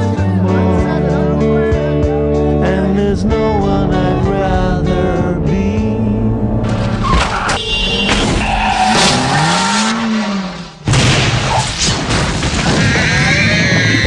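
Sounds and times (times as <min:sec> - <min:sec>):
music: 0:00.0 - 0:07.2
vehicle skidding: 0:06.6 - 0:10.8
loud crash impact: 0:10.8 - 0:13.3.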